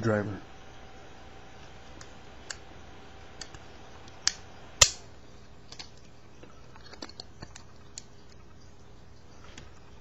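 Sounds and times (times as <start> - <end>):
multi-tool metal clicks and snaps: 4.2 - 5.0.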